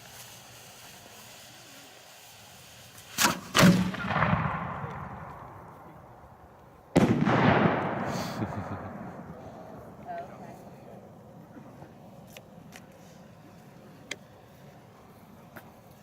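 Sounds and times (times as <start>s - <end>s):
firework crack: 0.0s - 16.0s
firework booms: 3.0s - 10.2s.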